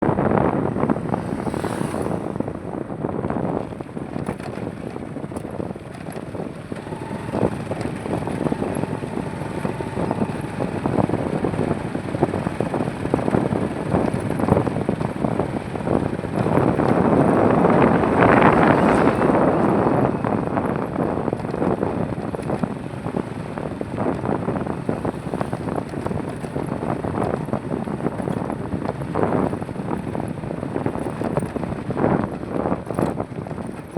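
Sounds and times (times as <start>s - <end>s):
highway traffic rushing: 0.0s - 33.9s
vehicle passing close: 0.2s - 3.6s, 6.9s - 23.2s.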